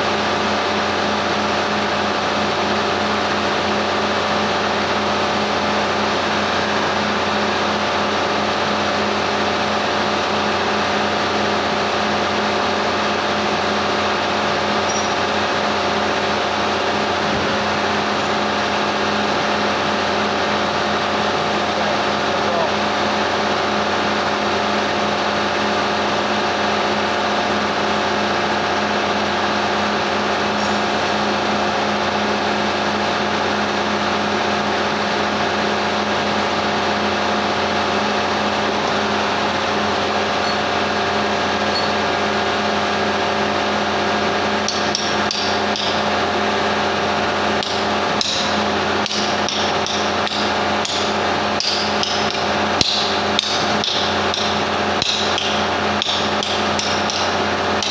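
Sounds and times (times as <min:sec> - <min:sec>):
steady machine hum: 0:00.0 - 0:57.9
hammer striking metal: 0:44.7 - 0:46.0, 0:47.6 - 0:57.9.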